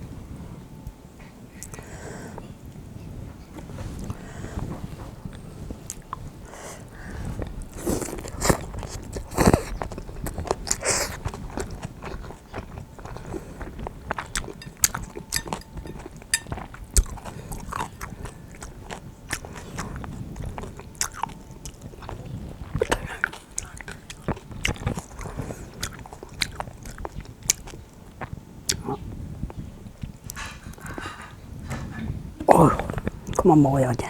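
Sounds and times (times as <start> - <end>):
wet chewing and crunching: 3.8 - 31.0.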